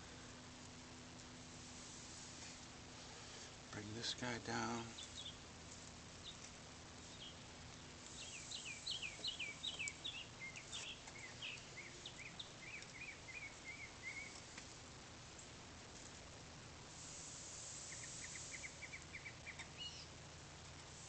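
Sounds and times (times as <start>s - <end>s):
faint steady hiss: 0.0s - 21.0s
songbird singing: 3.2s - 15.6s, 17.2s - 20.4s.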